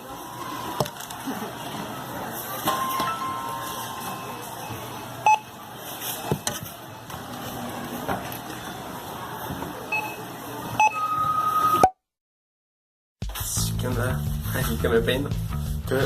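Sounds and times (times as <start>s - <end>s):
short electronic beeps: 2.8s - 5.5s, 9.9s - 12.0s
long steady beep: 10.8s - 12.0s.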